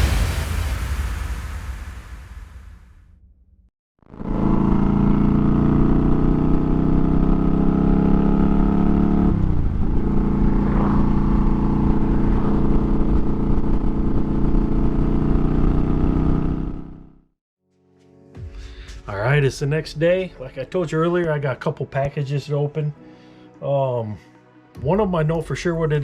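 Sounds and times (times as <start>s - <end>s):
motorcycle engine running: 4.0s - 17.3s.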